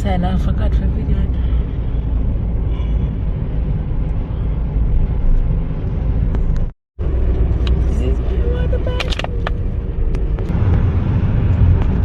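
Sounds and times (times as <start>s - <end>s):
car road and engine rumble: 0.0s - 12.0s.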